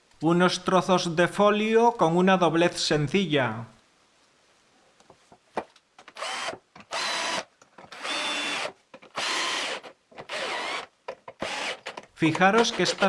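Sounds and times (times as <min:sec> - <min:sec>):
drill driving screws into wood: 0:06.0 - 0:13.0
drill click: 0:06.1 - 0:13.0.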